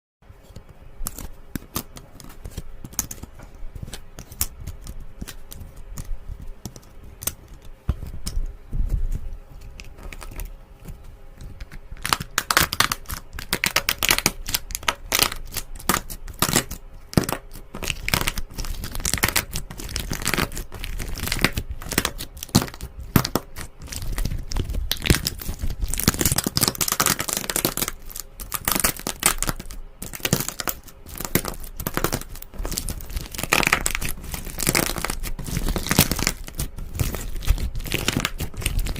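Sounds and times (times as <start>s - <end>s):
slime squishing and popping: 11.4s - 38.9s.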